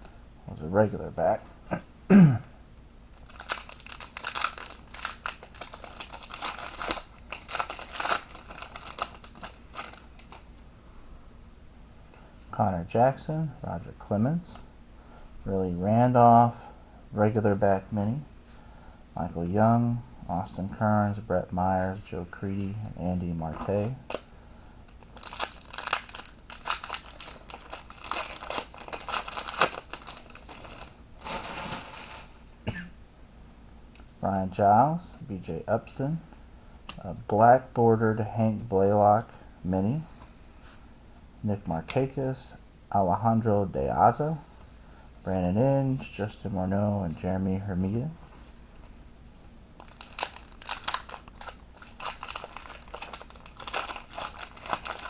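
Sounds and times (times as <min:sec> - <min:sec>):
wrapper crinkling and tearing: 0:03.2 - 0:10.5, 0:24.9 - 0:32.4, 0:49.8 - 0:55.0.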